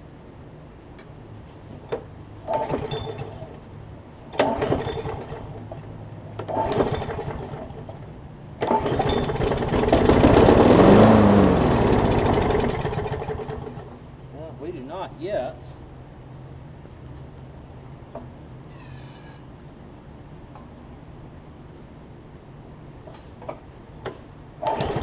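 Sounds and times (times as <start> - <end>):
mower engine pull-starting: 2.4 - 3.6, 4.3 - 5.8, 6.4 - 8.0, 8.6 - 14.0, 24.6 - 25.0
mower engine running: 6.4 - 8.0, 8.6 - 14.0, 24.6 - 25.0.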